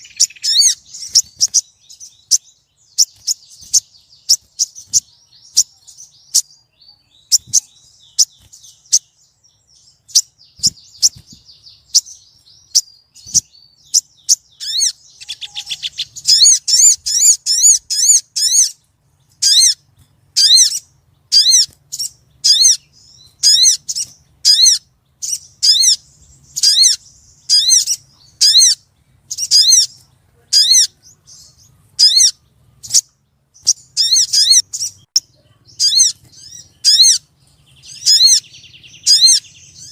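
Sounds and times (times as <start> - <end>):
bird trill: 0.0 - 39.9
bird calling high notes: 14.0 - 18.7.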